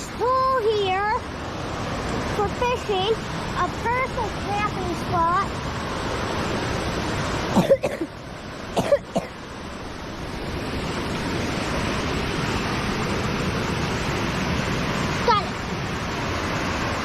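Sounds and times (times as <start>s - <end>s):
waterfall and stream rushing: 0.0s - 17.0s.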